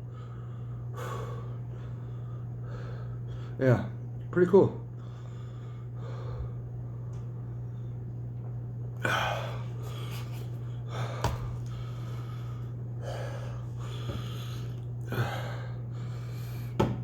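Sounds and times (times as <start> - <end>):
man breathing hard: 0.0 - 3.6, 5.0 - 7.0, 9.0 - 16.8
steady low hum: 0.0 - 17.0.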